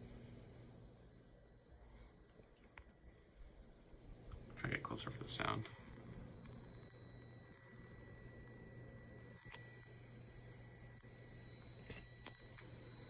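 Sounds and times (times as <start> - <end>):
high-pitched electronic tone: 4.7 - 13.0.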